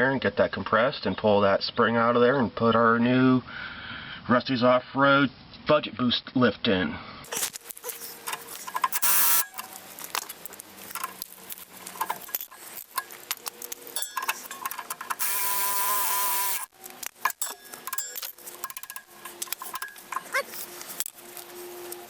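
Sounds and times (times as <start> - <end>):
cordless power tool whirring: 8.1 - 9.7, 12.8 - 22.0
hand tools clattering on metal: 10.4 - 15.3, 17.1 - 21.2.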